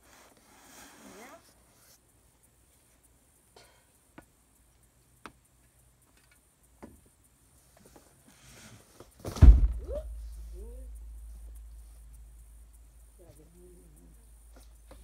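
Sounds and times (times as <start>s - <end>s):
soft rustle: 0.0s - 15.0s
faint clicks and taps: 4.1s - 8.1s, 14.2s - 15.0s
loud bump: 9.2s - 11.8s.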